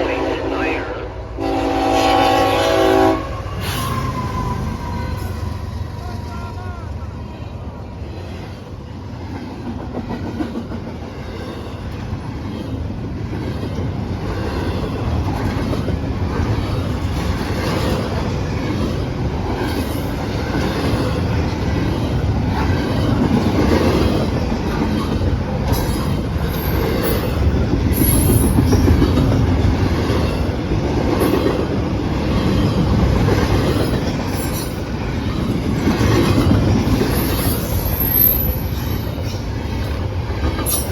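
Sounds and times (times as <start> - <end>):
train wheel squeal: 3.2 - 6.4, 19.6 - 21.2, 24.8 - 29.4, 33.7 - 35.5, 36.3 - 40.9
train wheels clattering on rails: 8.3 - 40.9.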